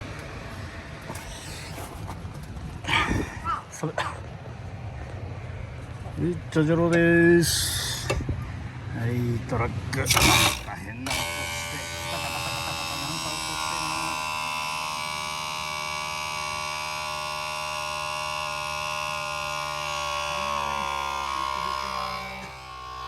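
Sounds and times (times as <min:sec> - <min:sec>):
truck diesel engine droning: 0:00.0 - 0:23.0.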